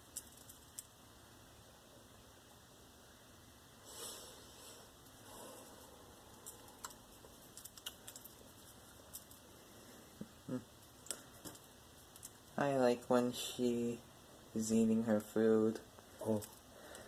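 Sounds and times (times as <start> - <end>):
bird cracking seed husks: 0.0 - 0.9, 6.2 - 9.4, 10.9 - 12.6.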